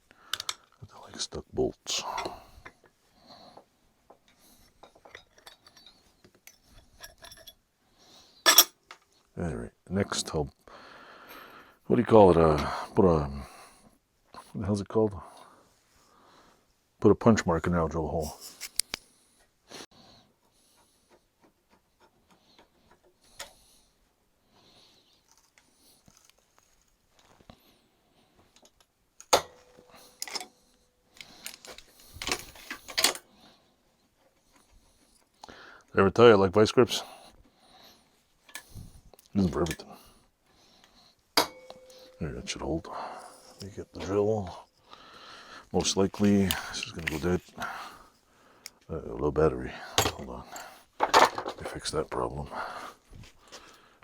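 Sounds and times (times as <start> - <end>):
metal tools clicking and clattering: 4.7 - 7.6, 8.5 - 9.0, 18.2 - 18.9, 29.2 - 33.3, 41.4 - 44.8, 45.8 - 48.2, 49.9 - 51.7
sharp metal clink: 8.5 - 8.7, 41.4 - 42.2
metallic clicks of hand tools: 18.4 - 19.0, 46.2 - 47.3.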